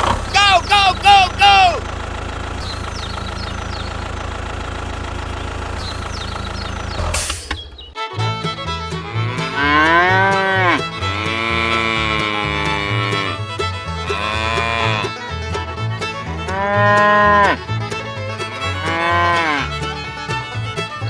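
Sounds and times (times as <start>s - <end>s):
engine-like low hum: 0.0s - 21.0s
swooping moo-like tones: 8.2s - 15.2s, 16.5s - 17.6s, 18.4s - 20.0s.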